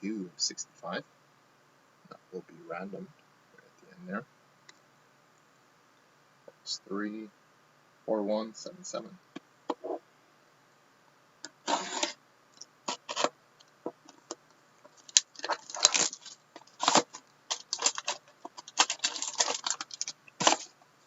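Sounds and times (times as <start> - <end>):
packaging rustling and clicking: 12.9 - 20.8.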